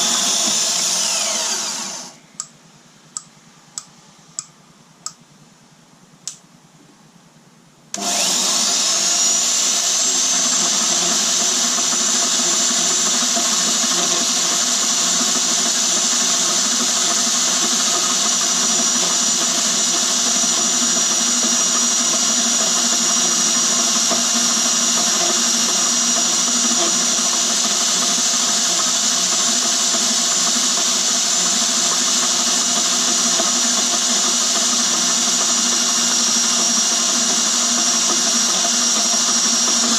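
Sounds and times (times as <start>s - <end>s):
bandsaw motor humming: 0.0s - 2.5s, 8.0s - 39.9s
click: 2.4s - 5.2s, 6.2s - 6.4s.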